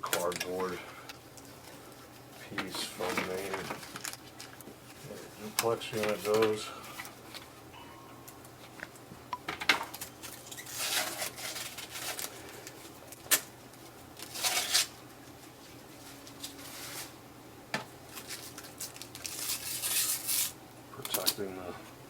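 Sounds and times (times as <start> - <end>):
tape and plastic peeling: 10.0 - 15.0, 18.1 - 21.4.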